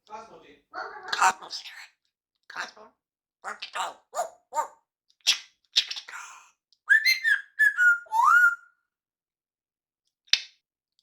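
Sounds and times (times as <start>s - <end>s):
parrot whistling: 6.9s - 8.7s.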